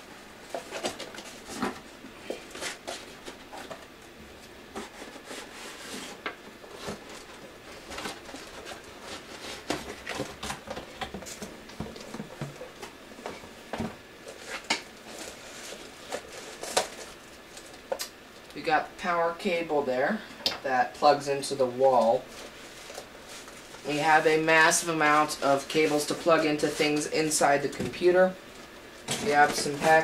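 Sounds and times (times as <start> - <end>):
packaging crinkling and rustling: 0.4 - 18.6, 22.0 - 30.0.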